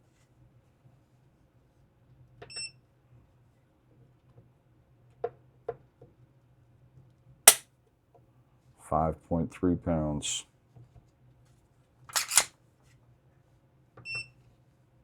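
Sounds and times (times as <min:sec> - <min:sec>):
pistol trigger click: 0:12.1 - 0:12.5.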